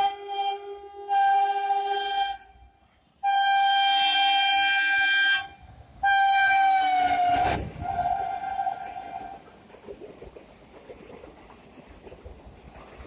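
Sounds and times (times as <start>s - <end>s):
locomotive horn blasts: 0.0s - 9.4s.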